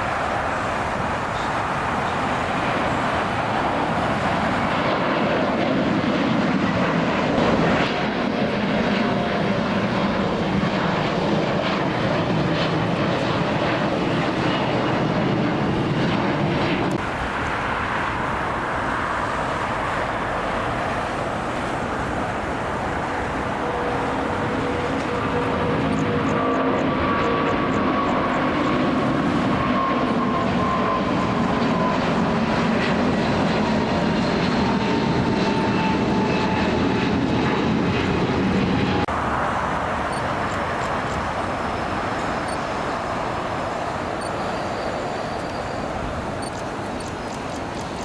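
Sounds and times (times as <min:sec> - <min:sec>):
jet engines rumbling: 0:00.0 - 0:48.0.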